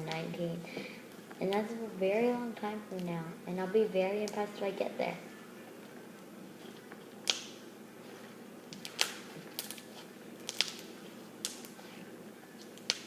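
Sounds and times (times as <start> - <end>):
slime clicking and snapping: 7.2 - 7.6, 8.7 - 9.8, 10.4 - 11.8.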